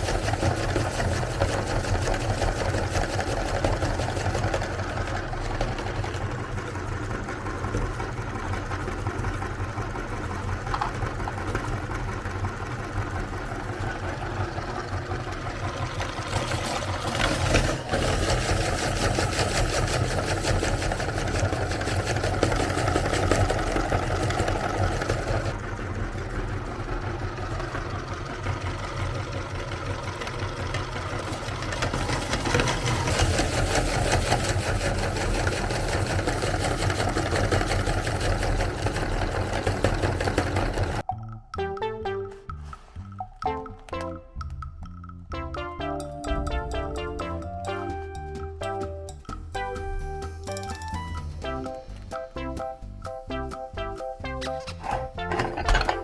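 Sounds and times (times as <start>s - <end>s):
electric meat grinder motor hum: 0.0s - 41.0s.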